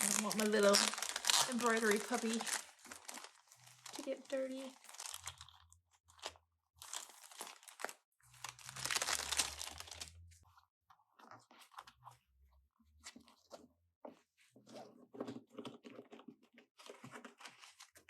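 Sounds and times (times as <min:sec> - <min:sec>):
plastic sleeve crinkling: 0:00.0 - 0:05.6, 0:06.2 - 0:10.2.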